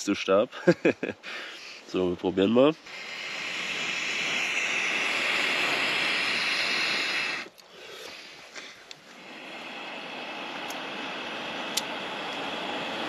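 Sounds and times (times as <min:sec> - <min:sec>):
breath blown through blow pipe: 0:02.8 - 0:13.0
faint ticks: 0:07.4 - 0:09.2.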